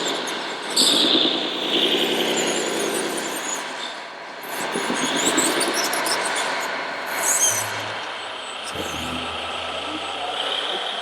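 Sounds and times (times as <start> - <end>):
small motors and gears whirring: 7.1 - 10.9.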